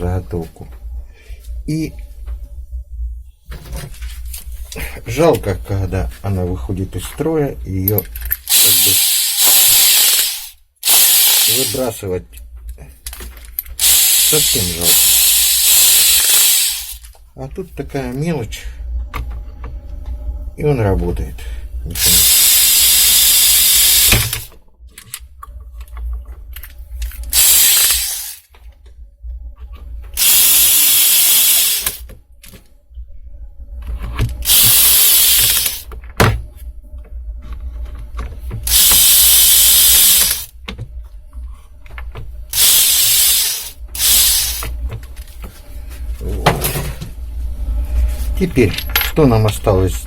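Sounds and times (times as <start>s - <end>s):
electric screwdriver running: 8.5s - 11.9s, 13.8s - 17.0s, 22.0s - 24.5s, 27.3s - 28.5s, 30.2s - 32.0s, 34.4s - 35.9s, 38.7s - 40.5s, 42.6s - 44.7s.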